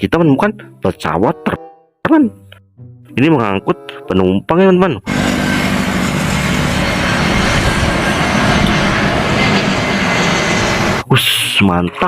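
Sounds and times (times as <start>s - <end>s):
airplane engine rushing noise: 5.0s - 11.1s
low hum: 5.1s - 11.0s.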